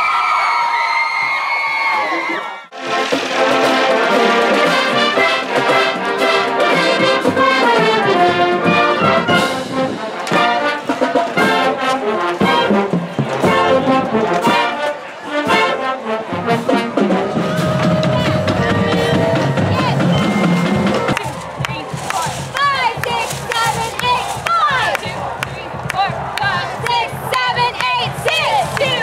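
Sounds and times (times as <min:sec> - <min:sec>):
trombones and trumpets playing: 0:02.7 - 0:21.3.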